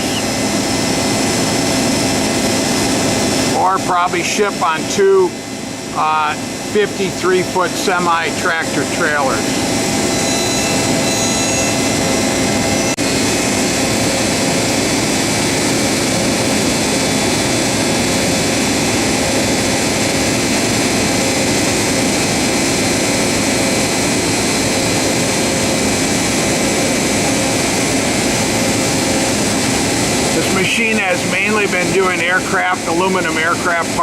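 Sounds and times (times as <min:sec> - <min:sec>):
faint high whines: 0:09.0 - 0:14.6.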